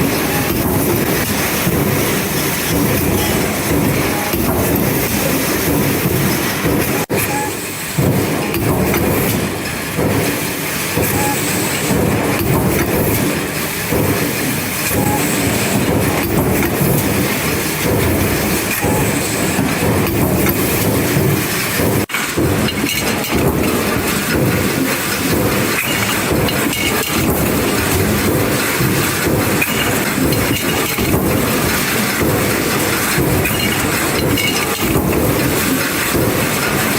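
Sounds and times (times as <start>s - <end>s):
industrial clatter: 0.0s - 36.9s
stamping presses on sheet metal: 0.0s - 36.9s.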